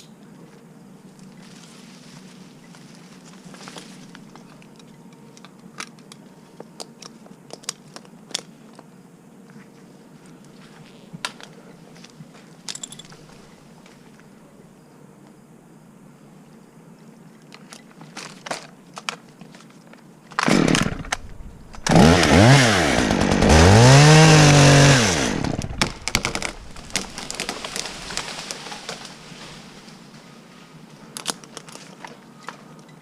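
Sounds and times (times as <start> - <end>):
chainsaw revving: 20.4 - 28.8.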